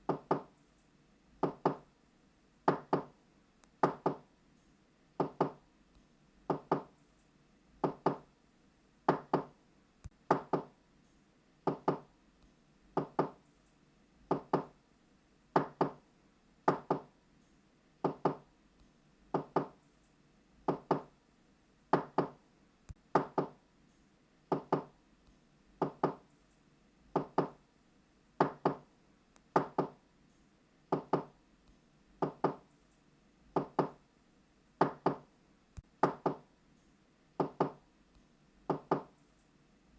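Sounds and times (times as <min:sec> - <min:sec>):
knocking on a door: 0:00.1 - 0:00.5, 0:01.4 - 0:01.8, 0:02.7 - 0:03.1, 0:03.8 - 0:04.2, 0:05.2 - 0:05.6, 0:06.5 - 0:06.9, 0:07.8 - 0:08.2, 0:09.1 - 0:09.5, 0:10.3 - 0:10.7, 0:11.7 - 0:12.1, 0:13.0 - 0:13.4, 0:14.3 - 0:14.8, 0:15.6 - 0:16.0, 0:16.7 - 0:17.1, 0:18.0 - 0:18.4, 0:19.3 - 0:19.8, 0:20.7 - 0:21.1, 0:21.9 - 0:22.4, 0:23.1 - 0:23.6, 0:24.5 - 0:24.9, 0:25.8 - 0:26.2, 0:27.2 - 0:27.6, 0:28.4 - 0:28.8, 0:29.6 - 0:30.0, 0:30.9 - 0:31.3, 0:32.2 - 0:32.6, 0:33.6 - 0:34.0, 0:34.8 - 0:35.2, 0:36.0 - 0:36.4, 0:37.4 - 0:37.8, 0:38.7 - 0:39.1.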